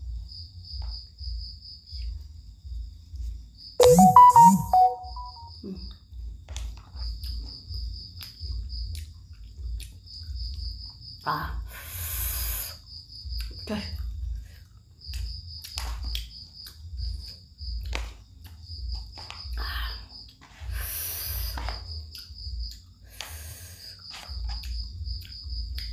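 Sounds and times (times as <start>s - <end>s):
pulsing high chirp: 3.8s - 5.5s
lip smacks and mouth clicks: 8.2s - 10.0s, 24.5s - 25.9s.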